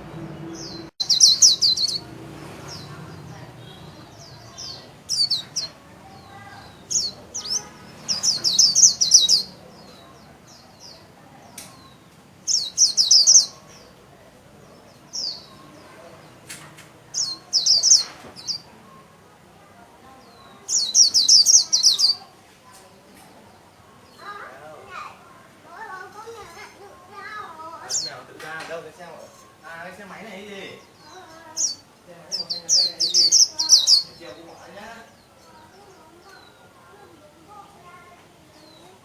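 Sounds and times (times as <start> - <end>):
bird twittering: 0.0 - 11.0, 11.7 - 13.8, 17.1 - 18.7, 20.4 - 22.3, 30.8 - 36.6.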